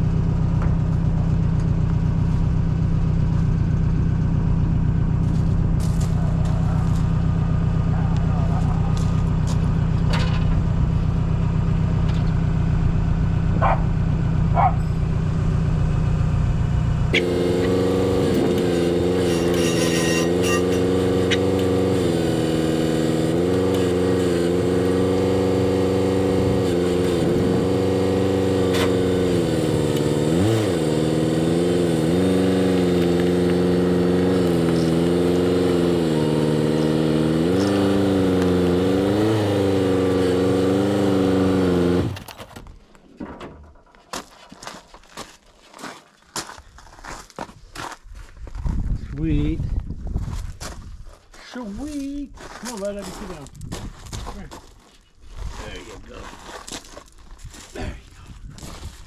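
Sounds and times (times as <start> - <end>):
forklift engine revving: 0.0 - 42.6.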